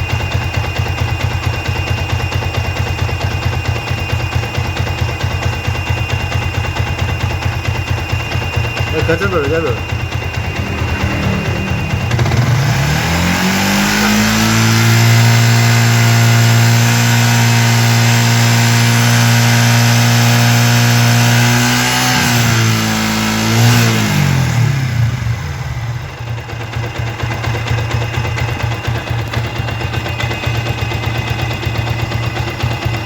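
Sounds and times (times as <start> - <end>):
motorcycle engine revving: 8.1 - 25.7.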